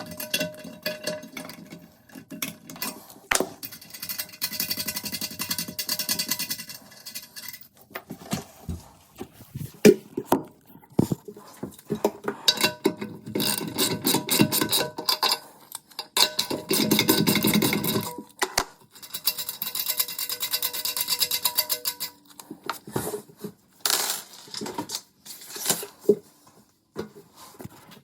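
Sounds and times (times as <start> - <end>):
metal tools clinking and rattling: 0.0 - 8.2, 12.4 - 23.0.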